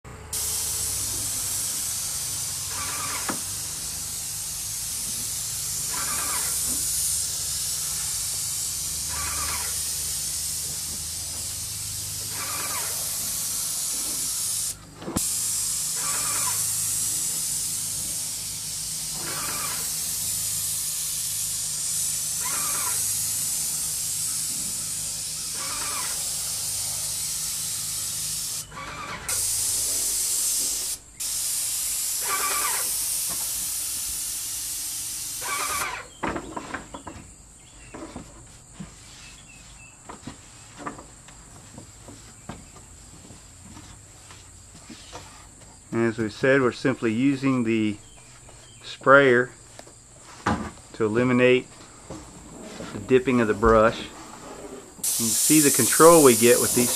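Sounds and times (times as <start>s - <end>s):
airless sprayer hissing: 0.2s - 36.1s, 52.8s - 56.9s.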